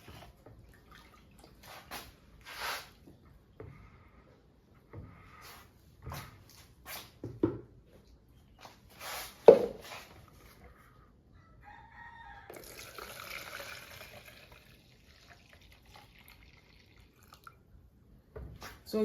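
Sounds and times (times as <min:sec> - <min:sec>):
liquid pouring into cup: 0:12.5 - 0:17.6.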